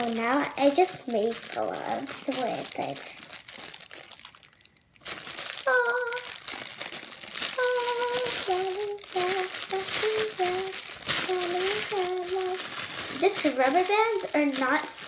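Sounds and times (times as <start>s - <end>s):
slime crinkling being squeezed: 0.0s - 15.0s
girl humming: 5.7s - 6.4s, 7.6s - 13.5s.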